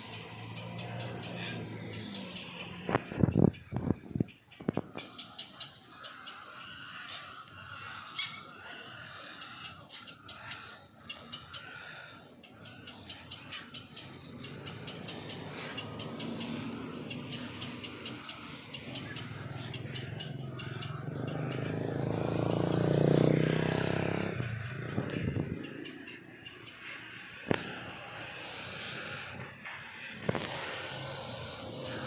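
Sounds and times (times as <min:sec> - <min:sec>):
rapid clicking chatter: 0:00.0 - 0:23.2, 0:24.8 - 0:32.0
engine passing by: 0:00.0 - 0:32.0.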